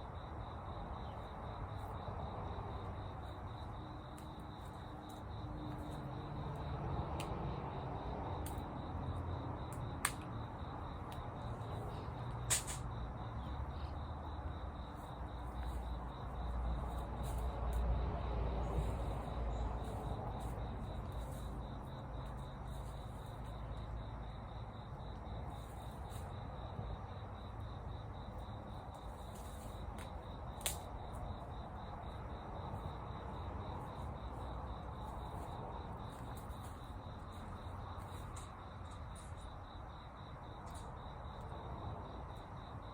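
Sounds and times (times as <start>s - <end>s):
insects trilling: 0.0s - 42.9s
low outdoor rumble: 0.0s - 42.9s
sharp pops: 12.5s - 12.8s.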